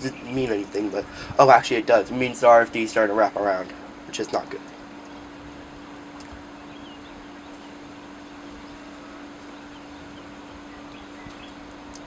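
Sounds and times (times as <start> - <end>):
low hum: 0.0 - 12.0
steady storm hiss: 0.0 - 12.0
faint bird chirps: 6.3 - 12.0.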